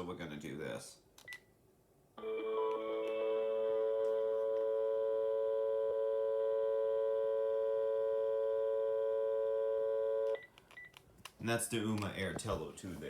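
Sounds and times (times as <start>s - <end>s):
phone dial tone: 2.2s - 10.9s.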